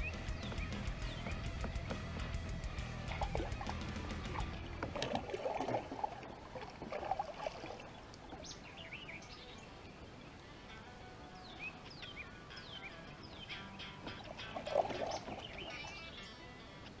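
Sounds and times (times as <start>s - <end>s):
small bird chirping: 0.0s - 2.1s
water splashing against a kayak: 4.7s - 8.4s.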